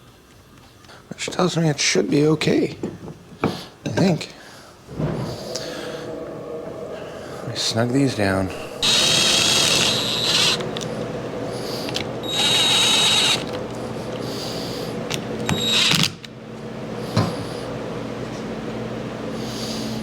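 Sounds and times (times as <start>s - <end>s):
power driver whirring: 8.5s - 14.2s.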